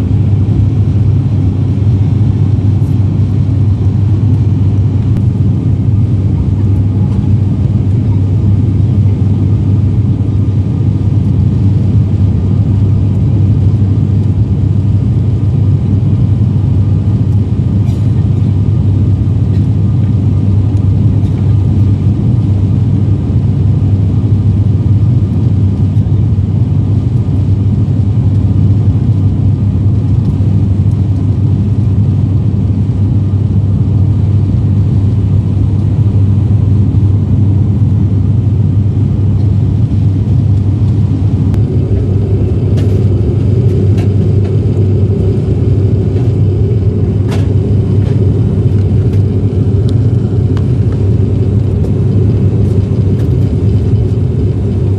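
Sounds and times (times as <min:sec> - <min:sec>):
airliner engine drone in cabin: 0:00.0 - 0:54.9
higher hum: 0:35.1 - 0:54.9.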